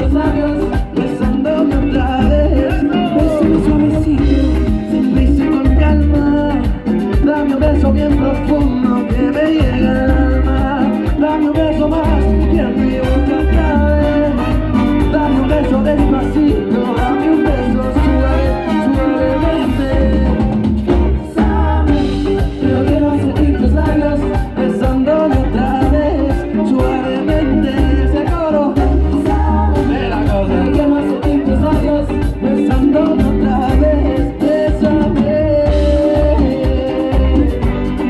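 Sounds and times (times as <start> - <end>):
driving drum beat: 0.0 - 38.0
live latin dance music: 0.0 - 38.0
person singing: 0.0 - 38.0.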